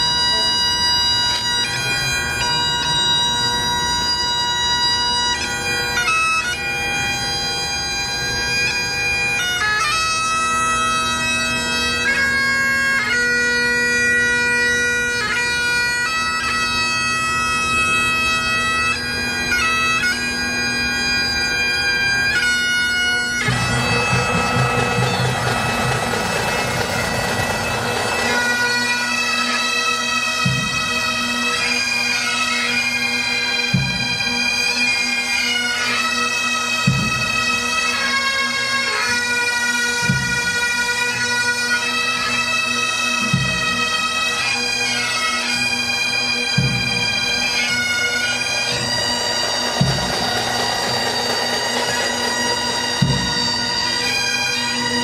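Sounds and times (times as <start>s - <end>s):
bagpipes playing slow tune: 0.0s - 55.0s
rush of noise: 23.5s - 28.7s.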